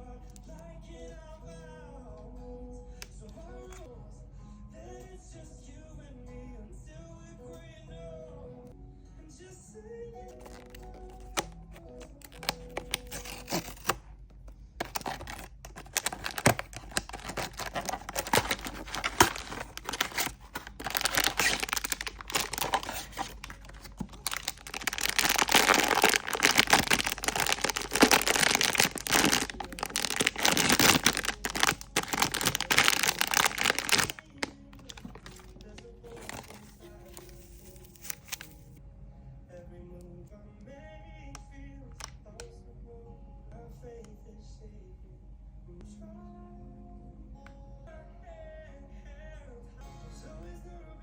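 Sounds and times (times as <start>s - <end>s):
plastic and foil wrapping crinkling: 10.3s - 14.1s, 14.8s - 38.8s.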